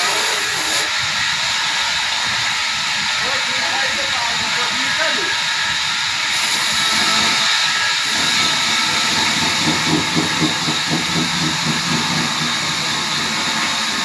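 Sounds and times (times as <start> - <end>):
sawmill machinery hissing: 0.0 - 14.0.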